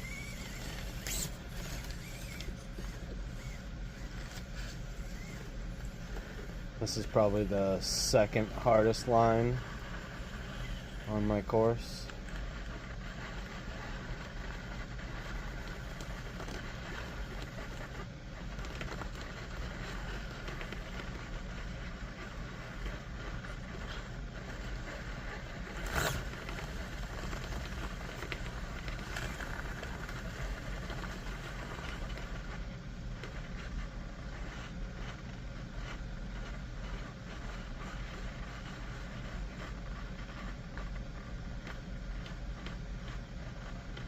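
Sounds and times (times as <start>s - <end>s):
low hum: 0.0s - 18.0s
rc car motor whirring: 0.0s - 44.0s.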